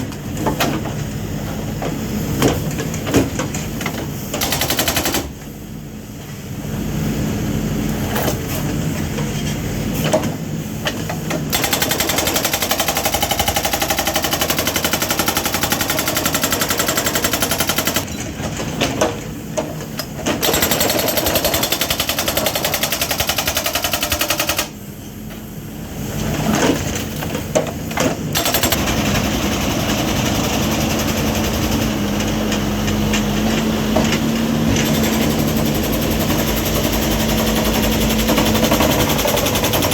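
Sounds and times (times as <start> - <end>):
hydraulic breaker hammer pounding: 11.5 - 18.1, 28.3 - 32.5, 34.5 - 39.9
diesel engine running: 28.4 - 39.9.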